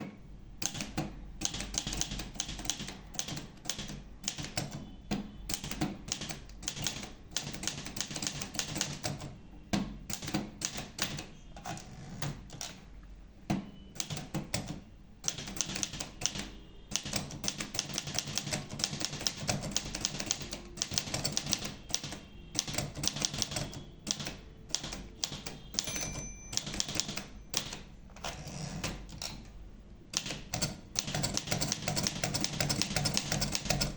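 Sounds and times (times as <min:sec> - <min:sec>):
typewriter key strikes: 0:00.6 - 0:12.8, 0:13.5 - 0:29.4, 0:30.2 - 0:33.9
typewriter bell ringing: 0:24.8 - 0:27.8.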